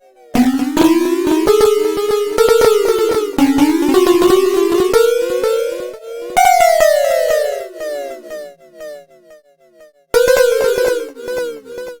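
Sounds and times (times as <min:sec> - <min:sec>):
computer-generated sine pings: 0:00.4 - 0:09.2, 0:10.2 - 0:12.0.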